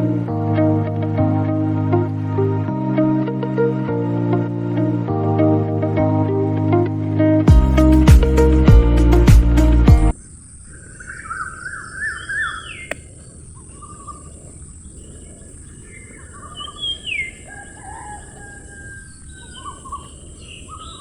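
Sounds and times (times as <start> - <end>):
birds chirping: 10.1 - 21.0.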